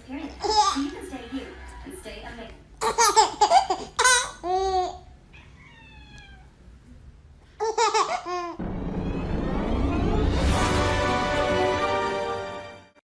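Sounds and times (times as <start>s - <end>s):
baby giggling: 2.8s - 5.0s, 7.6s - 8.6s
music: 8.6s - 13.0s.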